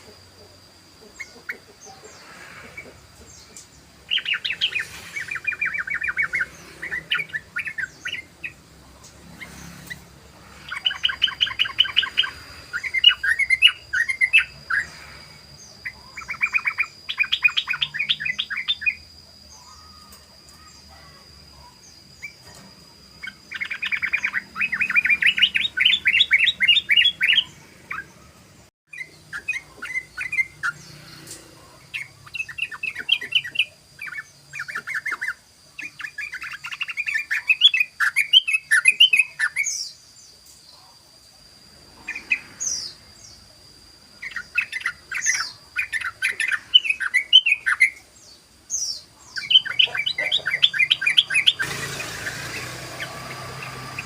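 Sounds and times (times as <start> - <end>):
bird rolling chatter call: 0.0 - 28.4, 48.7 - 54.0.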